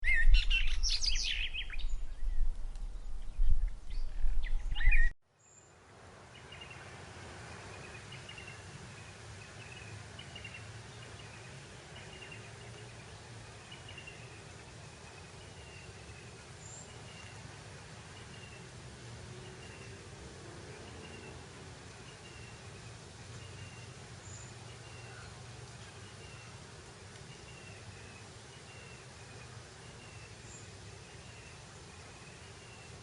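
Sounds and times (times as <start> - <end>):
birds calling: 0.0 - 5.1
wind buffeting microphone: 0.0 - 5.1
steady breeze: 0.0 - 33.0.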